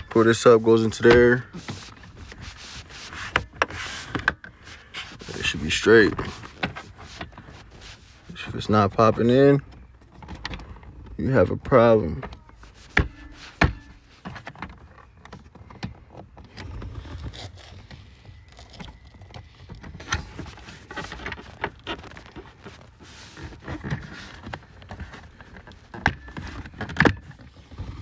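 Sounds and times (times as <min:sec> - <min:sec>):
rustling: 0:00.0 - 0:09.0.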